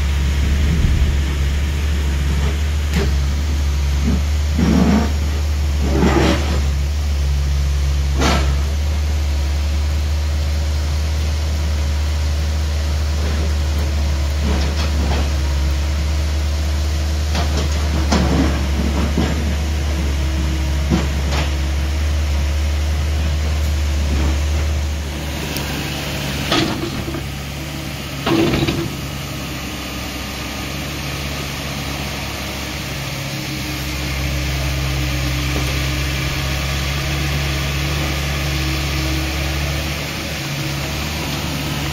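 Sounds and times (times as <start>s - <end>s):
excavator diesel engine running: 0.0s - 41.9s
knocks and scrapes: 3.9s - 6.7s.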